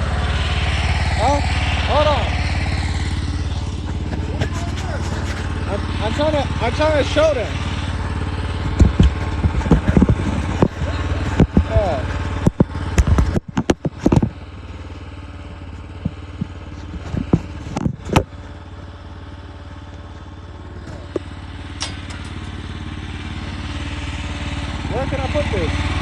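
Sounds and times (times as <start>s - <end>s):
skid steer engine running: 0.0s - 26.0s
sharp knocks and clatters: 3.6s - 6.4s, 8.6s - 14.4s, 15.8s - 18.6s, 20.8s - 22.6s.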